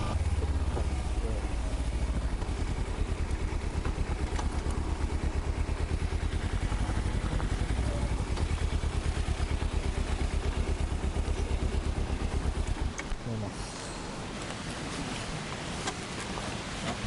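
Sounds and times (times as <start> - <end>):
motorcycle engine idling low: 0.0 - 13.2.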